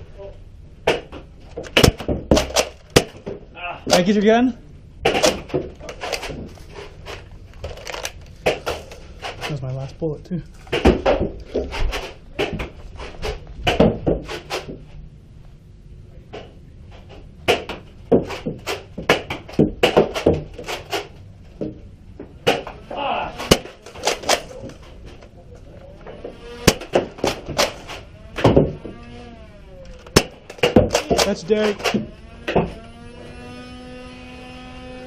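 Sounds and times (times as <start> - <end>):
muffled voices: 22.6 - 26.4
foam darts striking: 23.4 - 24.4, 26.6 - 27.8.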